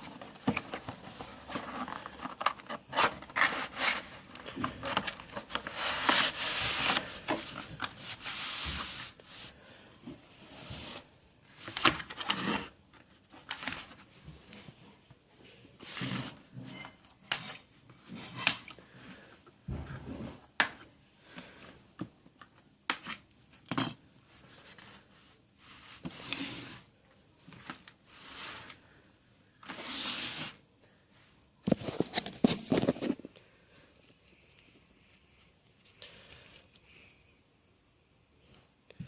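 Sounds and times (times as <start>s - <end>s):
cardboard and plastic rustling: 0.0s - 9.3s, 10.1s - 14.8s, 31.6s - 33.3s.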